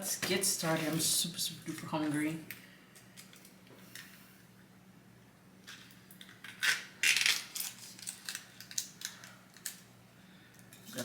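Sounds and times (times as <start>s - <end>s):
food packaging crinkling: 5.7s - 9.9s.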